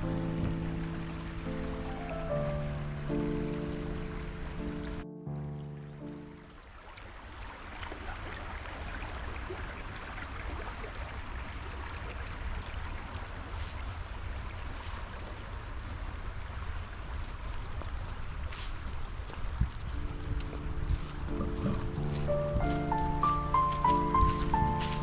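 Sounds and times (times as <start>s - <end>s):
creek water running: 0.0s - 25.0s
wind rumbling on microphone: 16.7s - 25.0s.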